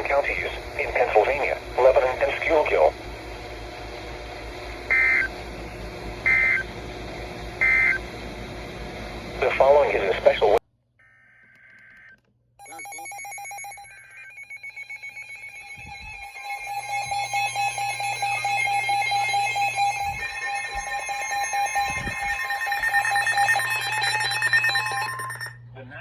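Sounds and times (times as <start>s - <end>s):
steady alert tone: 12.6s - 25.6s
high-pitched digital data bursts: 12.7s - 25.6s.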